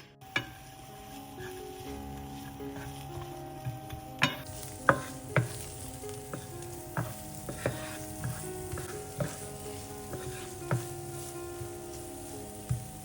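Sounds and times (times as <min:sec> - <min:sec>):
food sizzling in a frying pan: 0:00.0 - 0:13.0
utensil knocking against pan: 0:03.8 - 0:11.0.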